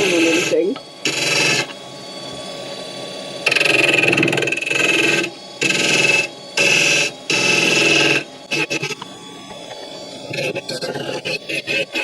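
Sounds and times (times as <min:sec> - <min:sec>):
wood lathe humming: 0:00.0 - 0:12.0
chisel scraping spinning wood: 0:07.6 - 0:12.0.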